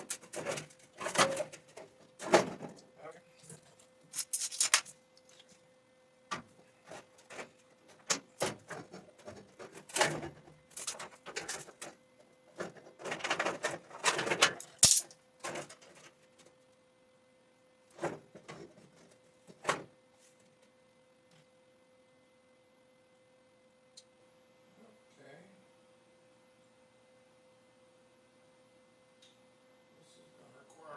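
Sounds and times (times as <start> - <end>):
faint steady hum: 0.0 - 30.9
metal parts and tools clanking: 4.1 - 4.9, 13.1 - 15.8.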